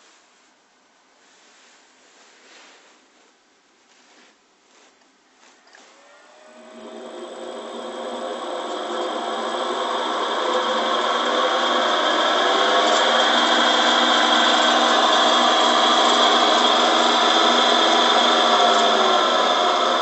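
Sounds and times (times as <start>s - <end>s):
drill press motor hum: 5.9s - 20.0s.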